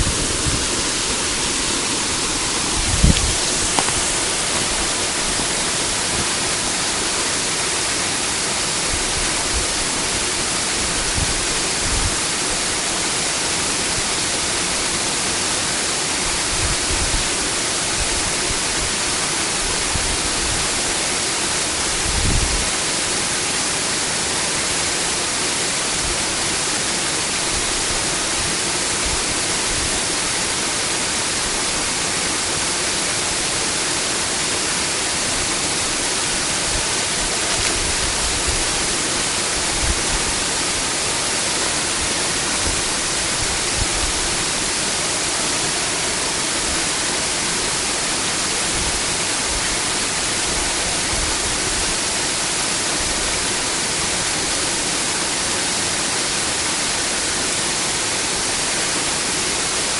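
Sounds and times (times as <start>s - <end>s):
low bumps: 0.0s - 6.3s
waterfall rushing: 0.0s - 59.9s.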